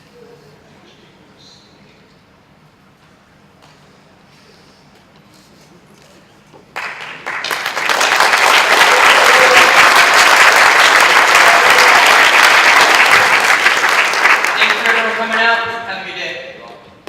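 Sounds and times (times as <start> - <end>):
audience applause: 6.8 - 15.6.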